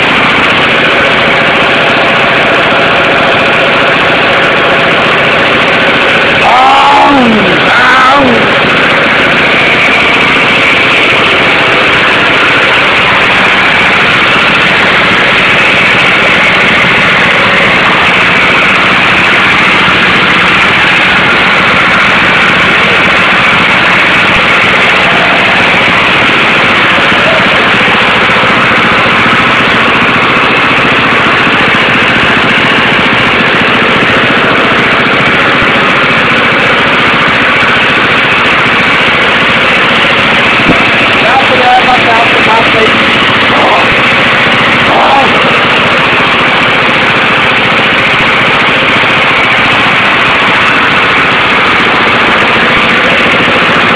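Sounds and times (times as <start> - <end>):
diesel engine running: 0.0 - 53.9.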